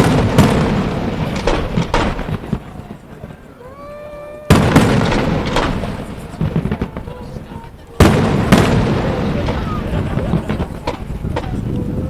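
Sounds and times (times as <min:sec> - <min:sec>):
fireworks booming: 0:00.0 - 0:12.0
fireworks crackling and popping: 0:00.0 - 0:12.0.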